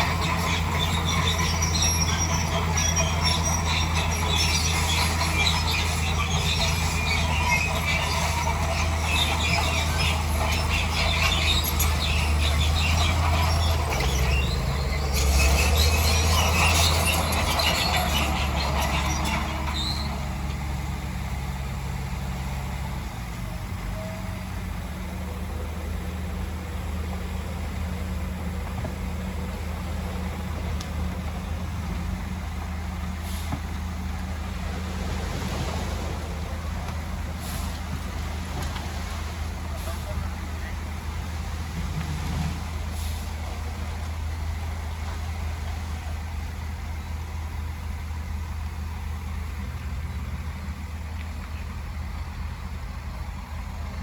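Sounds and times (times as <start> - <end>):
clattering and squealing: 0.0 - 21.4
heavy machine engine running: 0.0 - 54.0.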